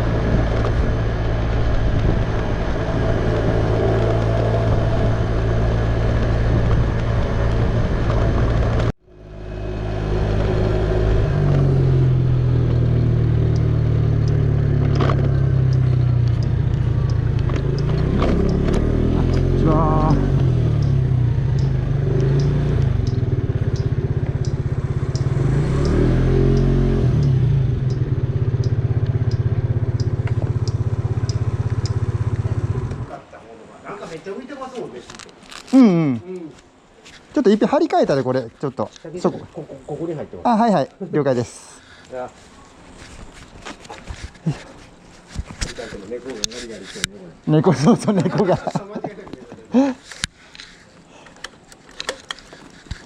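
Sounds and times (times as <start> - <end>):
motorcycle engine running: 0.0 - 33.1
faint regular ticking: 13.5 - 14.5, 15.3 - 32.5.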